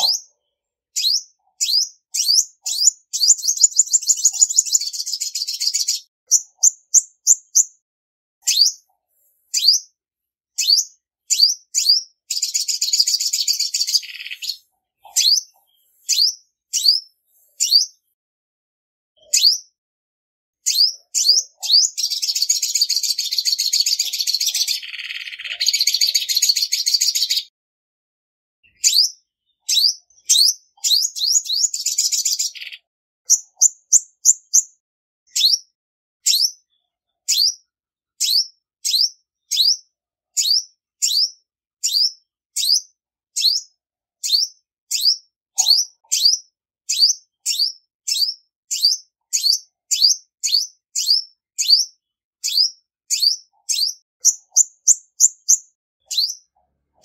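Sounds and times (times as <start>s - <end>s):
bird chattering trill: 0.0s - 0.3s, 1.0s - 7.7s, 8.5s - 8.8s, 10.6s - 17.0s, 20.7s - 27.5s, 29.7s - 34.7s, 44.2s - 56.4s
bird chirping: 0.0s - 7.8s, 8.4s - 10.0s, 10.6s - 18.2s, 19.2s - 19.8s, 20.6s - 27.5s, 28.6s - 57.0s.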